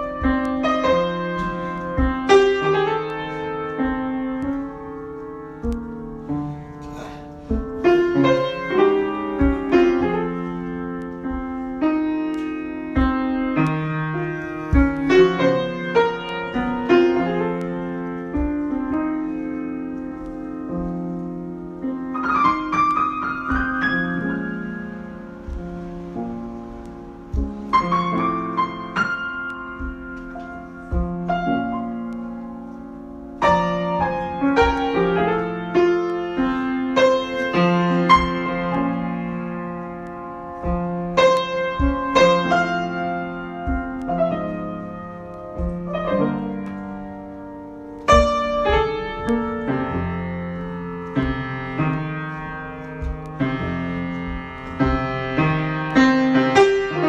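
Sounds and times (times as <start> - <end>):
solo piano: 0.0 - 57.0.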